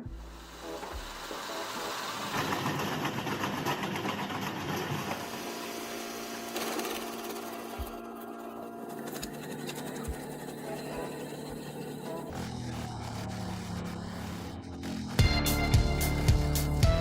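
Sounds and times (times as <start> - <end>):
wood-processing machinery rattling: 1.3 - 12.4
steady hum: 5.2 - 17.0.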